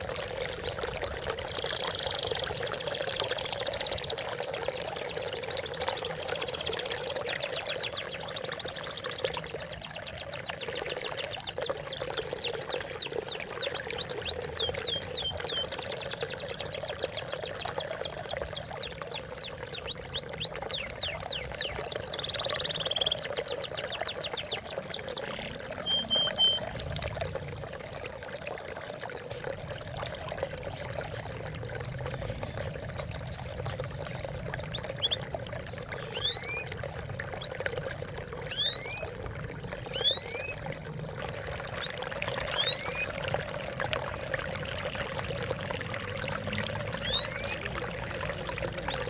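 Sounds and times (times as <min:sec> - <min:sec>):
water trickling and splashing: 0:00.0 - 0:49.0
bird chirping trills: 0:00.6 - 0:27.0, 0:33.9 - 0:36.7, 0:37.4 - 0:40.6, 0:41.8 - 0:43.2.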